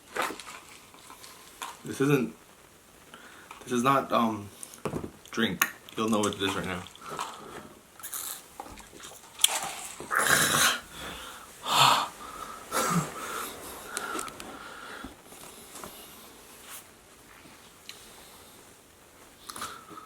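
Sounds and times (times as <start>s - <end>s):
man making breathy vocal sounds: 10.1s - 13.8s.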